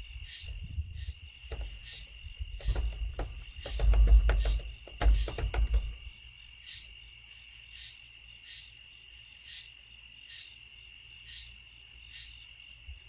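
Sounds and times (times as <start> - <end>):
cricket chirp: 0.0 - 13.0
crickets trilling: 0.0 - 13.0
loud low thumps and clicks: 1.4 - 6.1.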